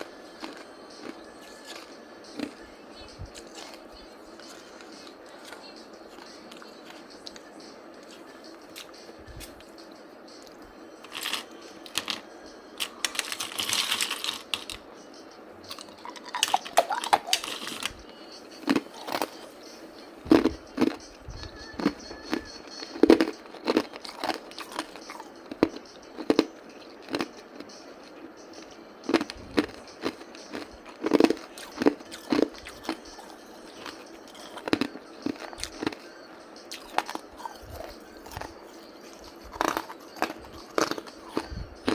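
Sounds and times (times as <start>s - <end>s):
person crunching ice: 31.3s - 35.9s, 36.7s - 38.5s, 39.5s - 41.5s.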